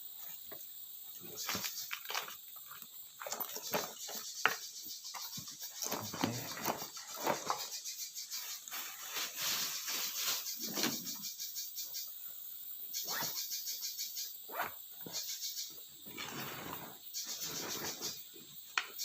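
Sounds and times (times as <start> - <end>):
high-pitched ticking chirr: 12.9 - 14.4.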